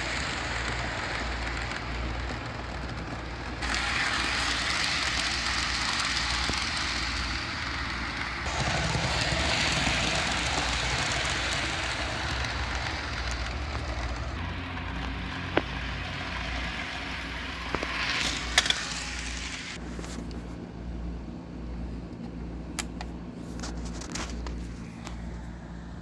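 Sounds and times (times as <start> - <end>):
model train motor hum: 0.0 - 20.2
train running noise: 0.0 - 26.0.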